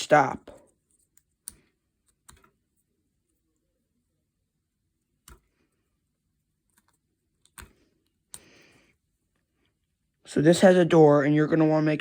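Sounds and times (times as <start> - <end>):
faint clicks of plastic parts: 0.6 - 2.8, 5.2 - 5.9, 6.6 - 8.7.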